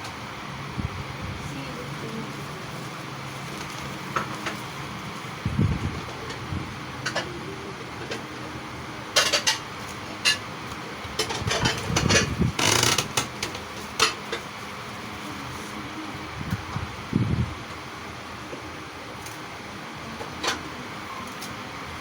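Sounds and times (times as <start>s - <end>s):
steady fan hum: 0.0s - 22.0s
dishes and utensils clattering: 9.1s - 10.5s, 11.1s - 12.9s.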